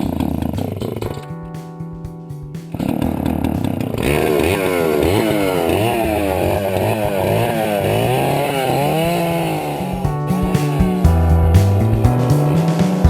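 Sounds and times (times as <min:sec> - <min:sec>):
chainsaw engine revving: 0:03.2 - 0:10.0.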